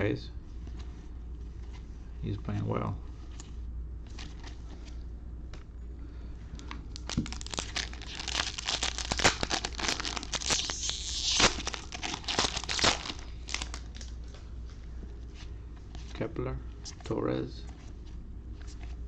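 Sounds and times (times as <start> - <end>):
foil wrapper crinkling: 6.9 - 14.1
hissing foil tear: 7.3 - 13.9.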